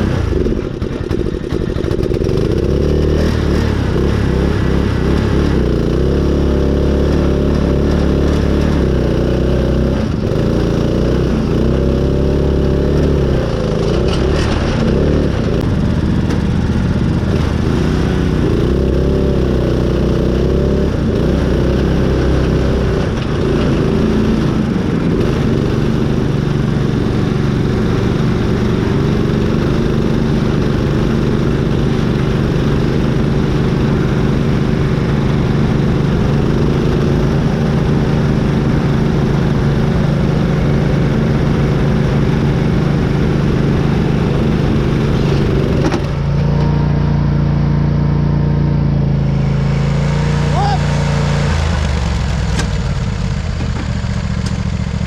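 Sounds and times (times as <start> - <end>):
lawn mower engine revving: 0.0 - 55.0.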